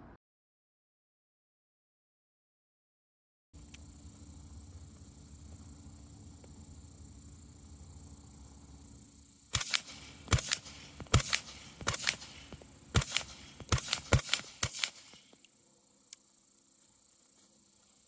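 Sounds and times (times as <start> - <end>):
suppressed rifle shots: 9.5 - 15.3.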